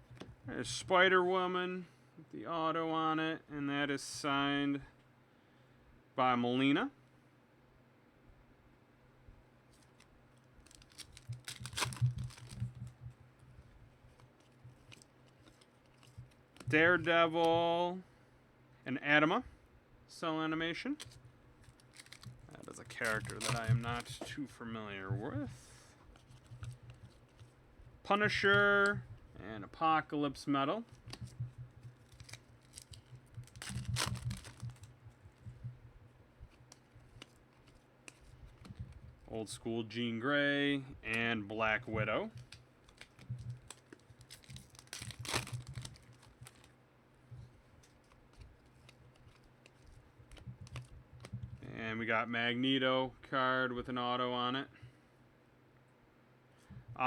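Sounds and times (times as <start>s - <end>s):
low steady hum: 0.0s - 57.0s
packaging crinkling scrape: 9.8s - 12.8s, 21.0s - 24.2s, 30.9s - 34.9s, 42.4s - 46.7s
wrapper rustling and tearing: 9.8s - 12.9s, 14.1s - 16.7s, 21.0s - 24.2s, 30.9s - 35.0s, 42.4s - 46.7s, 47.8s - 51.3s.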